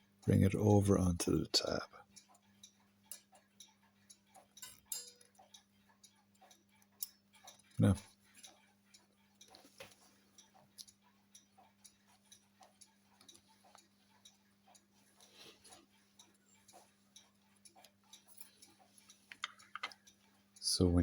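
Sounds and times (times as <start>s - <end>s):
mechanical clock ticking: 0.0s - 21.0s.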